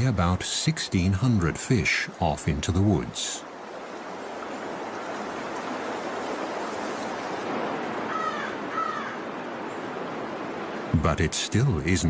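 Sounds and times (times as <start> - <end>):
creek water rushing over stones: 0.0 - 12.0
animal or bird calls: 8.1 - 9.2.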